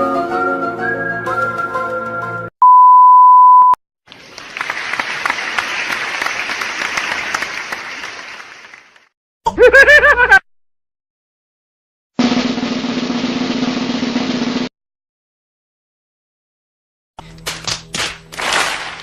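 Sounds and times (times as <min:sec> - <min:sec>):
censor bleep: 0:02.6 - 0:03.8
crowd clapping: 0:04.1 - 0:09.1, 0:17.5 - 0:19.0.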